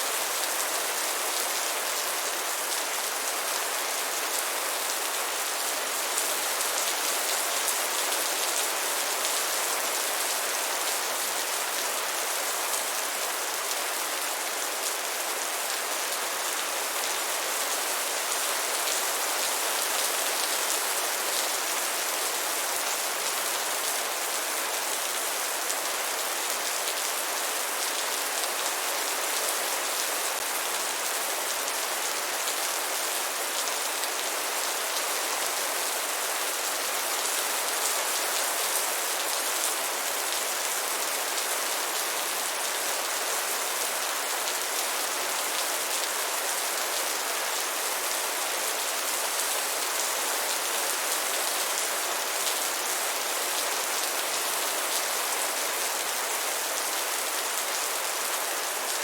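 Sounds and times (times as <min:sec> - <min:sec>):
steady rain falling: 0:00.0 - 0:59.0.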